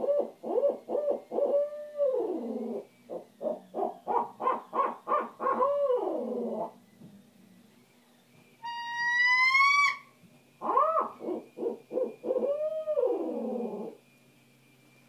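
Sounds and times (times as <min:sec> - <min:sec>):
owl call hoots: 0:00.0 - 0:06.8, 0:08.6 - 0:14.0
owl call rising scream: 0:08.6 - 0:14.0.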